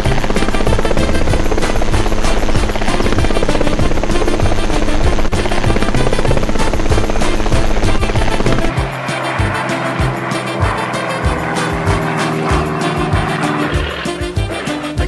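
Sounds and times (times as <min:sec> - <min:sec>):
fast rattling clatter: 0:00.0 - 0:08.8
music: 0:00.0 - 0:15.0.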